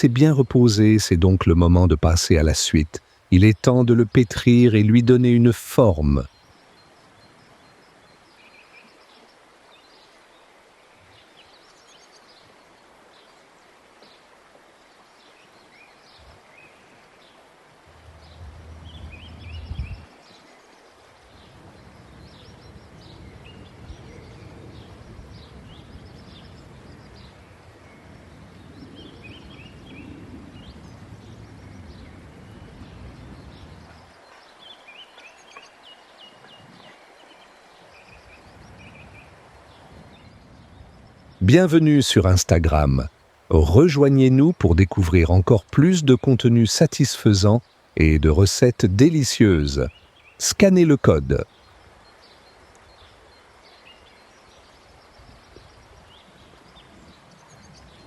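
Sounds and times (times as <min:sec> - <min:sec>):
small birds chirping: 0:00.0 - 0:58.0
low muffled rubbing noise: 0:17.9 - 0:20.1.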